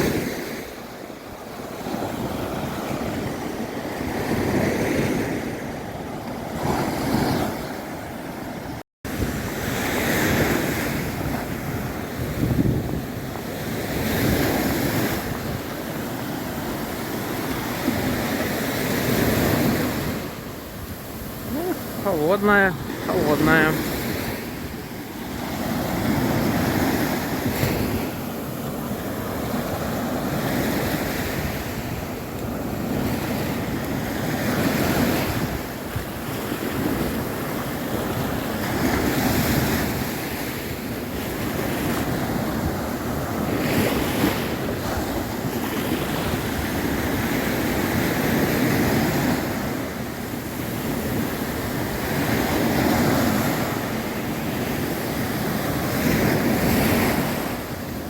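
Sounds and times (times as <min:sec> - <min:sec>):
surf breaking on a beach: 0:00.0 - 0:58.0
wind buffeting microphone: 0:02.1 - 0:18.2.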